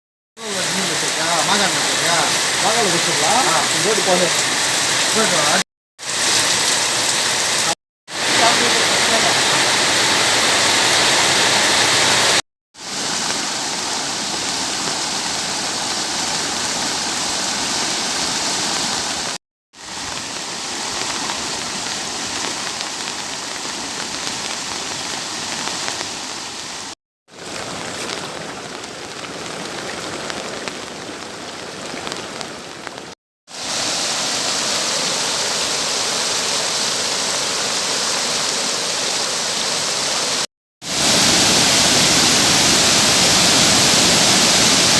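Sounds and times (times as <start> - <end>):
fast-flowing floodwater rushing: 0.4 - 44.9.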